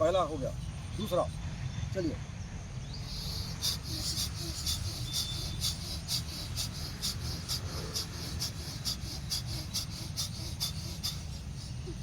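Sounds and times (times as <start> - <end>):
steady low hum: 0.0 - 12.0
rapid forceful nose breathing: 3.0 - 12.0.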